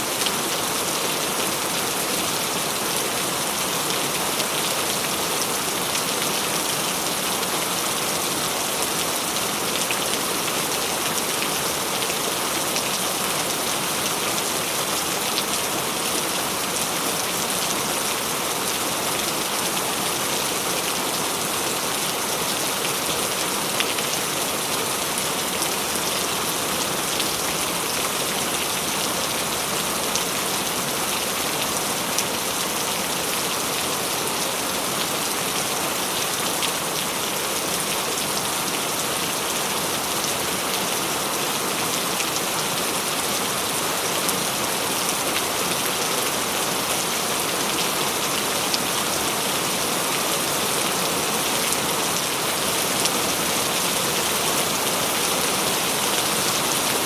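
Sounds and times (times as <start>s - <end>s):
rain pattering on a surface: 0.1s - 57.0s.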